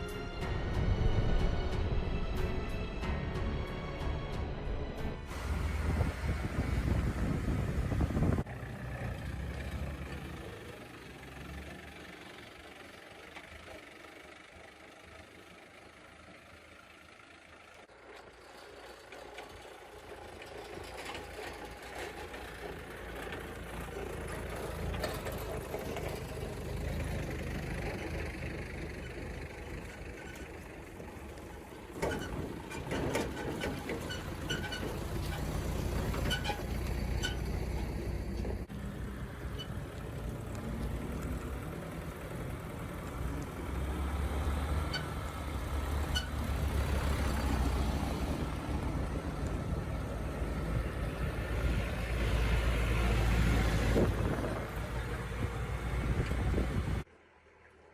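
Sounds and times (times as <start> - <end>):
heavy vehicle engine running: 0.0 - 57.1
metallic clanks and knocks: 30.0 - 38.7.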